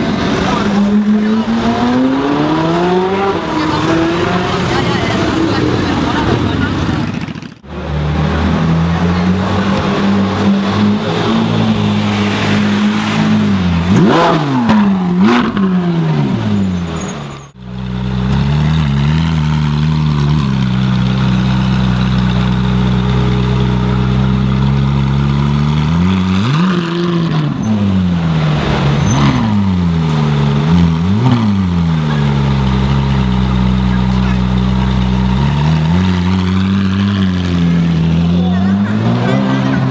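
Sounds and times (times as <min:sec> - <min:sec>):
car engine idling with revs: 0:00.0 - 0:39.9.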